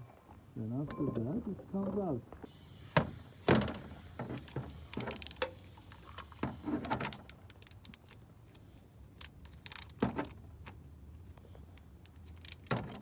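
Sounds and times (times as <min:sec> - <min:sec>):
wrench clinking on metal: 0:00.9 - 0:01.2, 0:09.2 - 0:10.0, 0:12.2 - 0:13.0.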